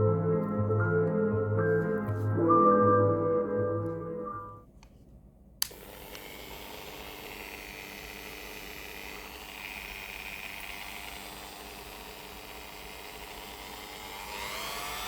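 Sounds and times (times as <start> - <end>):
rotary tool switch click: 5.6 - 6.4
rotary tool motor whine: 5.6 - 15.0.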